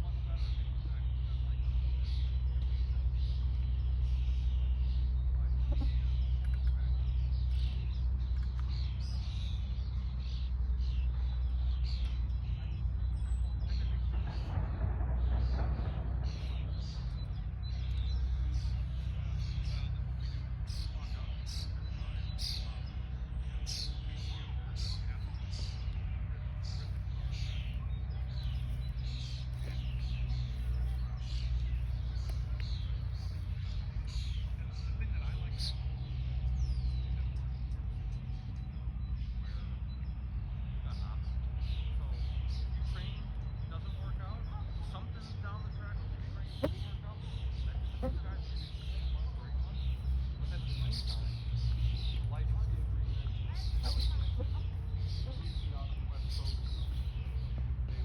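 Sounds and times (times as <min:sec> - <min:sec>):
songbirds chirping and trilling: 0:00.0 - 0:58.0
steady low hum: 0:00.0 - 0:58.0
steady low rumble: 0:00.0 - 0:58.0.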